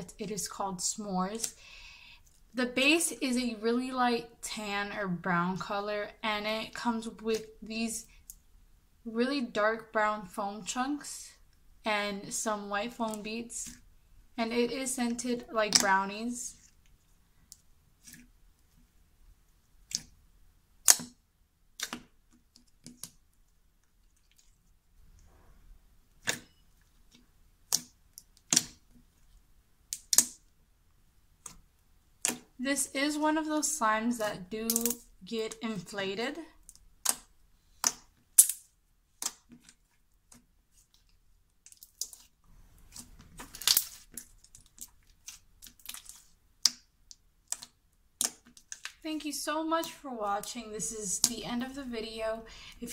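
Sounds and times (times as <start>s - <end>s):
slime clicking and popping: 20.8s - 21.2s, 27.7s - 28.8s, 29.9s - 30.4s, 36.7s - 38.6s, 42.9s - 44.3s
slime squishing and crackling: 36.6s - 49.0s.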